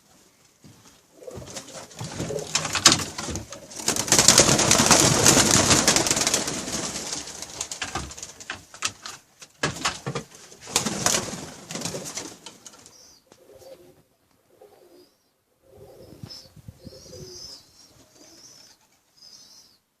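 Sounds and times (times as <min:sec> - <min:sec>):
pigeons cooing: 0:01.1 - 0:06.4, 0:11.8 - 0:19.7
loud rustling: 0:01.4 - 0:12.5.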